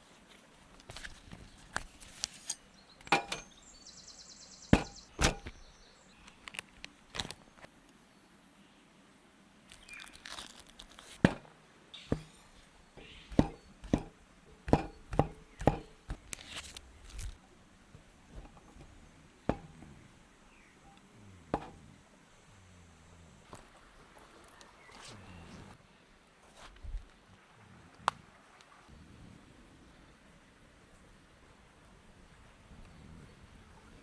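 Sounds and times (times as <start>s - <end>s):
sharp wooden knocks and snaps: 4.8s - 5.6s, 13.0s - 17.4s.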